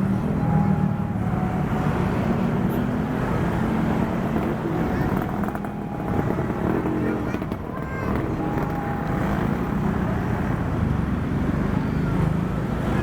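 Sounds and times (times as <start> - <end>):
diesel locomotive engine drone: 0.0 - 13.0.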